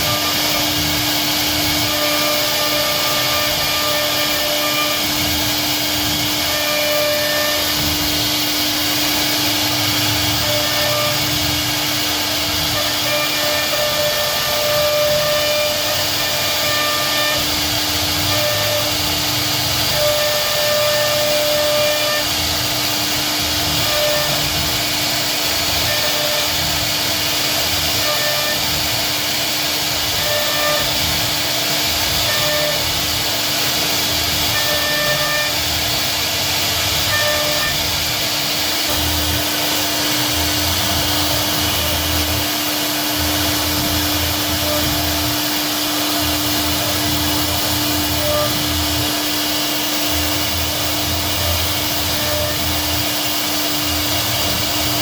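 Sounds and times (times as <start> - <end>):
router spindle carving wood: 0.0 - 55.0.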